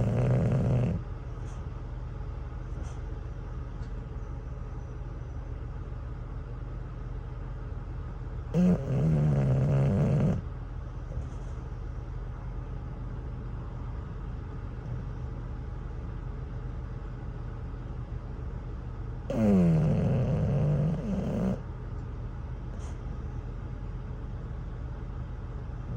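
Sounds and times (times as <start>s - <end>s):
dog snoring: 0.0s - 1.6s, 8.5s - 10.5s, 19.3s - 21.6s.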